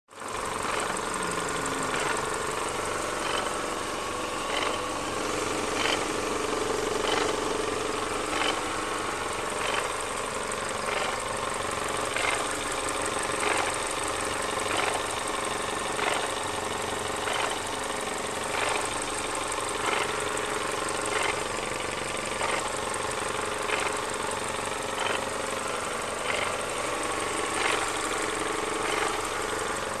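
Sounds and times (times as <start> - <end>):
car engine running: 0.1 - 30.0.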